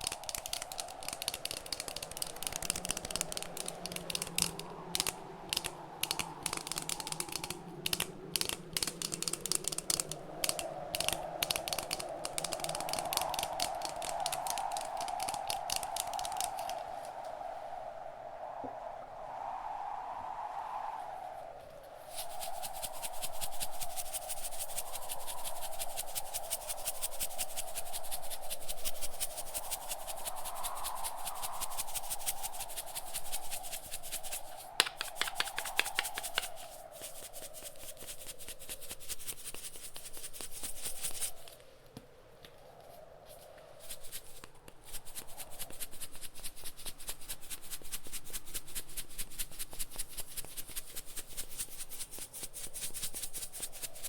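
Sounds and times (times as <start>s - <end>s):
rapid tapping clicks: 0.0s - 16.8s, 31.3s - 41.3s
howling wind: 0.0s - 54.0s.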